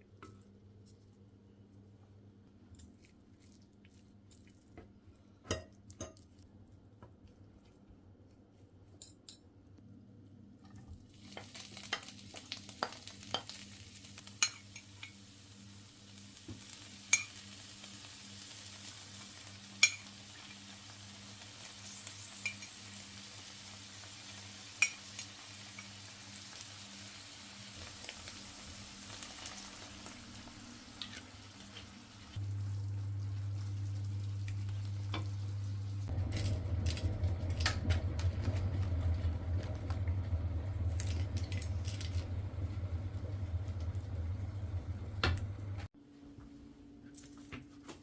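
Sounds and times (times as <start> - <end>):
food sizzling in hot oil: 11.0 - 36.2
steady low hum: 31.9 - 47.0.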